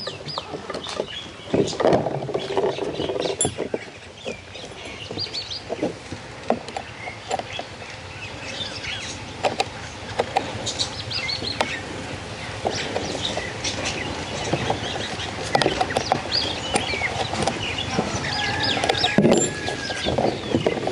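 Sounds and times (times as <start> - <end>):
birds chirping: 0.0 - 20.9
chainsaw parts clicking and knocking: 15.4 - 20.9.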